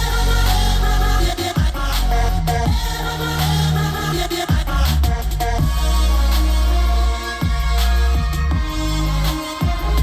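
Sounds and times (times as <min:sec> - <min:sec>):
electronic music with heavy bass: 0:00.0 - 0:10.0
booming kick drum: 0:01.6 - 0:03.1, 0:04.4 - 0:06.0, 0:07.4 - 0:10.0.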